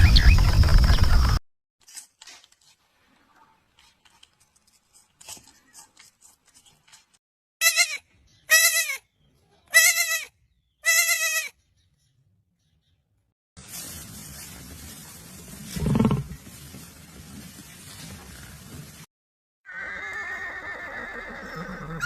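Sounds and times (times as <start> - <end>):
faint clicks and rustles: 1.8 - 7.2
young goat bleating: 7.6 - 9.0, 9.7 - 11.5.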